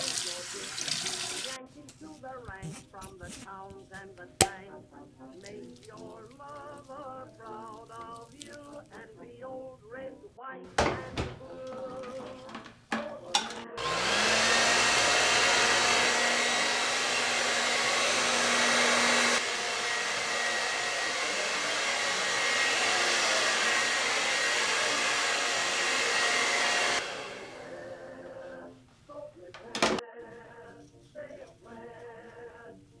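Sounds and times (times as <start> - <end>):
hair dryer switch click: 13.8 - 16.8
hair dryer blowing: 13.8 - 28.7.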